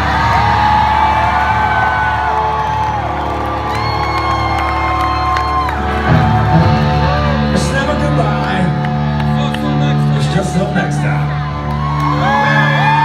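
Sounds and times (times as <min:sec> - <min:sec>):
crowd cheering and whooping: 0:00.0 - 0:08.1, 0:11.0 - 0:13.0
live rock music: 0:00.0 - 0:13.0.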